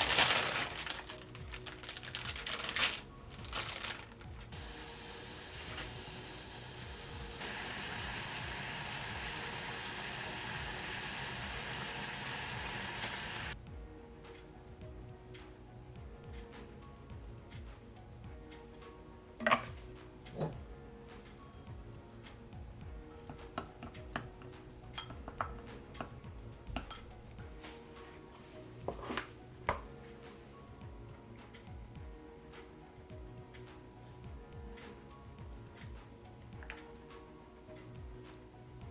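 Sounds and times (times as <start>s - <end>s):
soft background music: 0.0s - 38.9s
dishes and utensils clinking: 19.4s - 22.2s, 23.2s - 27.8s, 28.4s - 29.9s.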